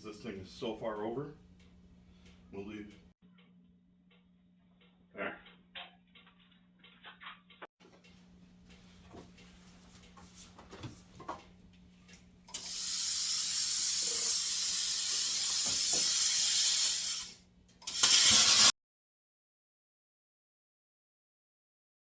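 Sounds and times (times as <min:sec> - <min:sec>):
plasma cutter hissing: 0:12.5 - 0:18.7.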